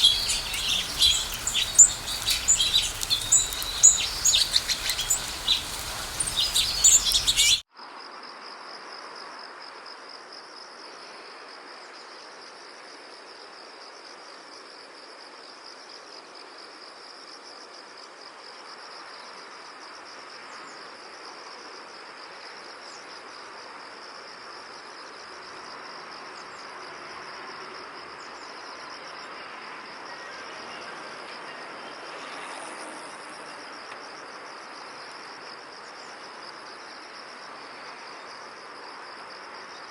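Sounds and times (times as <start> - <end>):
birds chirping: 0.0 - 7.6
high insect trill: 0.0 - 7.6.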